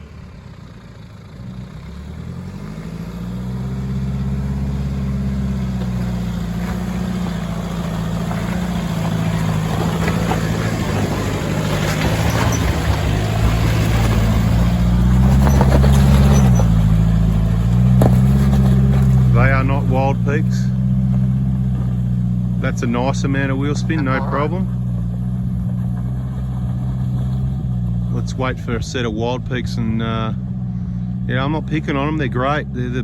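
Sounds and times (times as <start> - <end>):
vehicle engine working hard: 0.0 - 33.0
tyres spinning on loose rock: 8.4 - 17.1.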